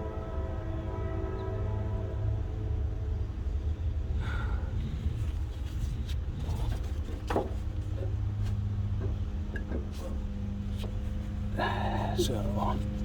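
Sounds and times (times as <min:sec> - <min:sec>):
passing train rumble: 0:00.0 - 0:13.0
light clicks and knocks: 0:06.4 - 0:11.5.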